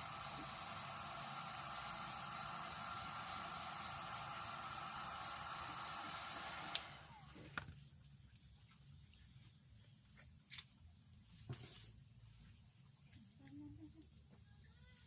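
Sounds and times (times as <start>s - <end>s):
heat gun hissing: 0.0s - 7.3s
heat gun switch click: 5.8s - 6.9s.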